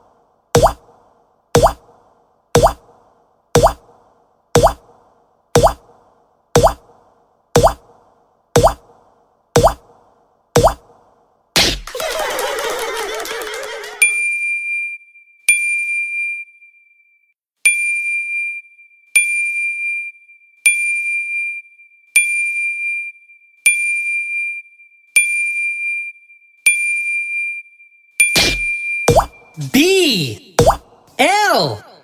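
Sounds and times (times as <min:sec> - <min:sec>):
warbling sound effect: 0:00.6 - 0:00.8.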